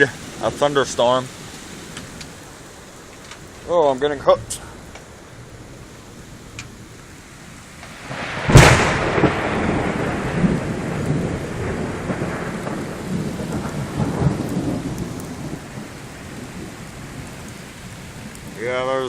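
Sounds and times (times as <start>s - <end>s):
heavy rain: 0.0s - 19.0s
thunder clap and rumble: 7.8s - 19.0s.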